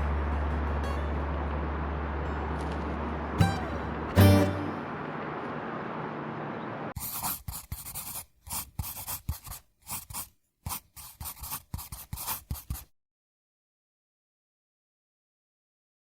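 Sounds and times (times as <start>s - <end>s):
held music chord: 0.0s - 6.8s
short scratching strokes: 7.0s - 12.9s.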